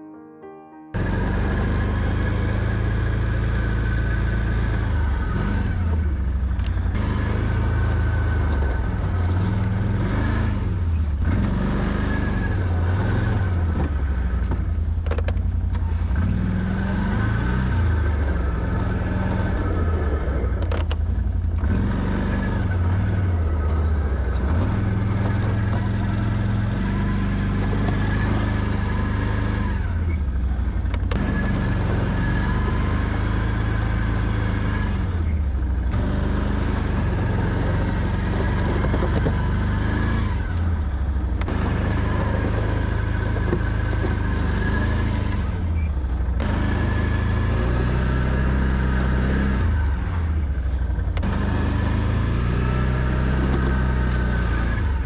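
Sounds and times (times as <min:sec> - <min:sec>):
engine revving: 0:01.0 - 0:55.0.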